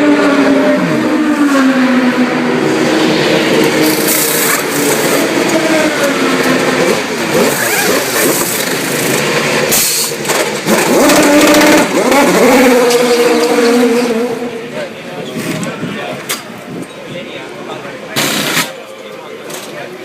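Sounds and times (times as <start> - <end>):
race car engines revving: 0.0 - 20.0.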